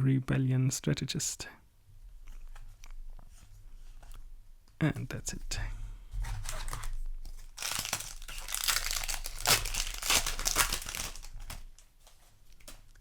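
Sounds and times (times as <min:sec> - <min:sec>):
foil wrapper crinkling and tearing: 0:06.2 - 0:11.9.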